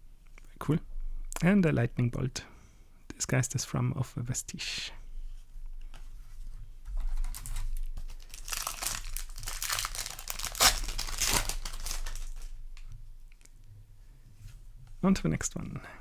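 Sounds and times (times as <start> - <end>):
foil wrapper crinkling and tearing: 7.2 - 12.6.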